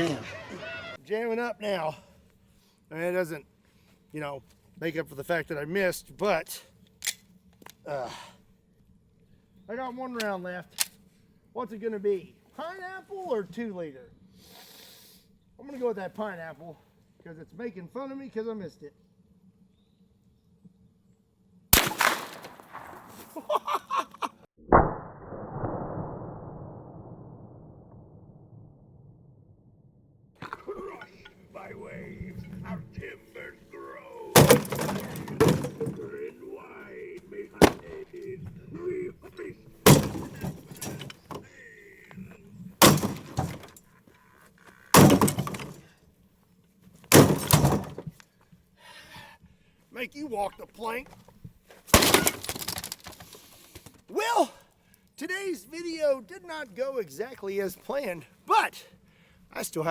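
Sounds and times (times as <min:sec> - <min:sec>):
pistol shot: 0:21.8 - 0:23.4
targets shattering: 0:21.8 - 0:23.4, 0:34.3 - 0:36.2, 0:37.6 - 0:37.9, 0:39.8 - 0:41.4, 0:42.8 - 0:43.8, 0:45.0 - 0:45.9, 0:47.1 - 0:48.0, 0:51.9 - 0:53.3
heavy boom: 0:24.6 - 0:30.3.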